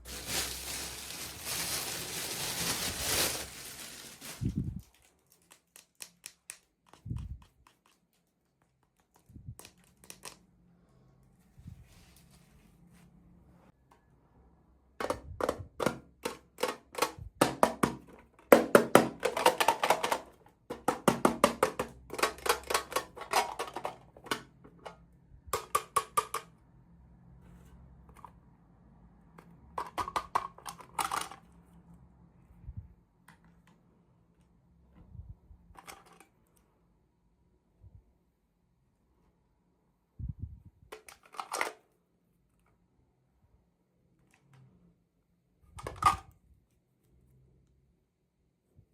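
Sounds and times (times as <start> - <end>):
plastic packaging crinkling: 0.0 - 5.8.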